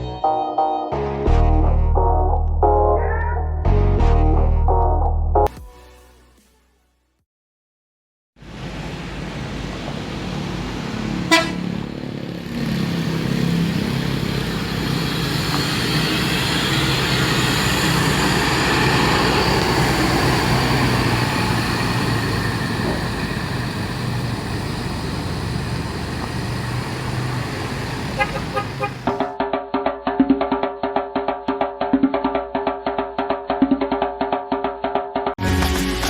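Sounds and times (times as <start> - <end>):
bus engine: 8.4 - 29.3
bus air horn: 11.2 - 11.8, 26.5 - 29.3.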